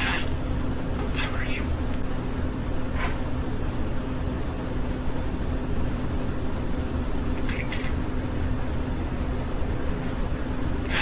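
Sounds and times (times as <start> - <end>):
faint hum: 0.0 - 11.0.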